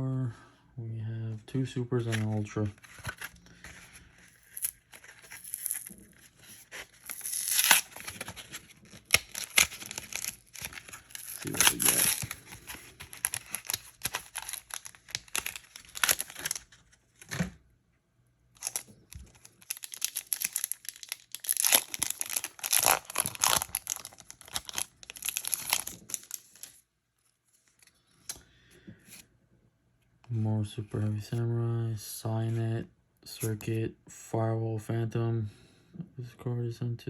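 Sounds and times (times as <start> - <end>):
foil wrapper tearing and crinkling: 4.2 - 16.7, 18.6 - 26.8.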